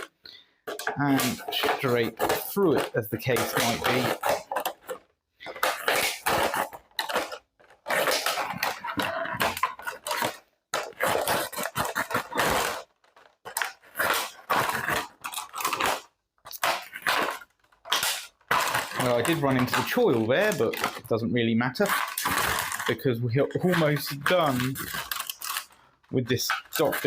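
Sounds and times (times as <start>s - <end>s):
knife cutting plastic bottle: 0.0s - 27.0s.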